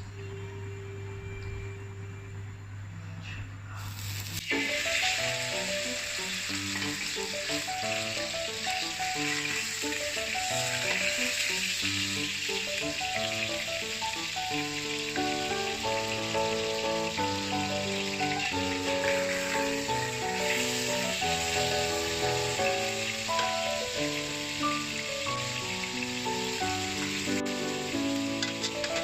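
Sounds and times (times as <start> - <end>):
background music: 0.0 - 3.1, 4.3 - 29.0
meat sizzling in oil: 3.8 - 29.0.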